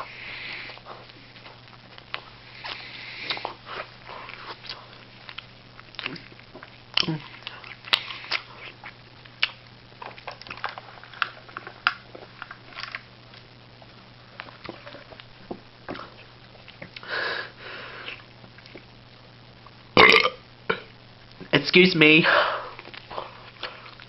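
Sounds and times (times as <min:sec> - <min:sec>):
person chewing: 0:00.0 - 0:17.1, 0:17.9 - 0:18.9, 0:22.7 - 0:24.0
loud breath: 0:17.0 - 0:18.2, 0:22.2 - 0:24.0.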